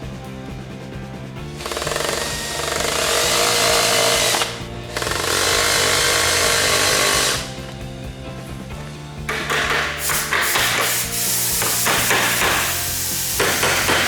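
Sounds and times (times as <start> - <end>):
power tool running: 1.4 - 14.0.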